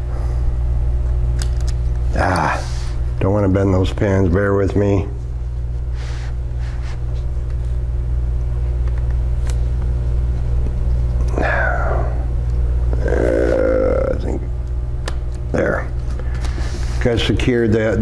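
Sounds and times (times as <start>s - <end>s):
low rumbling hum: 0.0s - 18.0s
wordless voice sounds: 2.1s - 5.2s, 13.0s - 14.6s.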